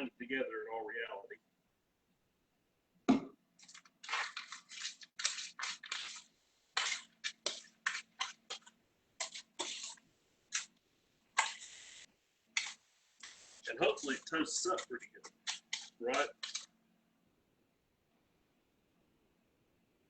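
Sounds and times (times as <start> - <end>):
scratchy mixing strokes in bowl: 3.6 - 16.8.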